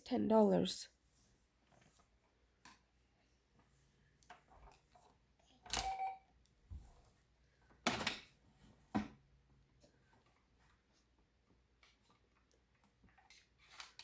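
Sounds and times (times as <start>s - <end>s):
short beep: 5.7s - 6.2s.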